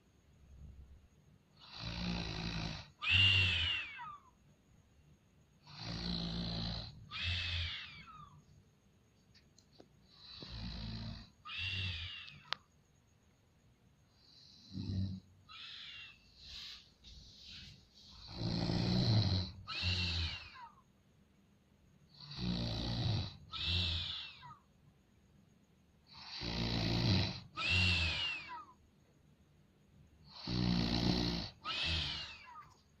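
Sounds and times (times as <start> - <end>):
rough snoring: 1.6 - 3.7, 5.6 - 7.8, 10.2 - 12.2, 14.2 - 15.3, 18.1 - 20.7, 22.2 - 24.3, 26.1 - 28.5, 30.3 - 32.6
whistling snore: 1.6 - 4.2, 5.6 - 8.4, 10.1 - 12.5, 14.1 - 20.7, 22.1 - 24.6, 26.1 - 28.7, 30.2 - 32.6.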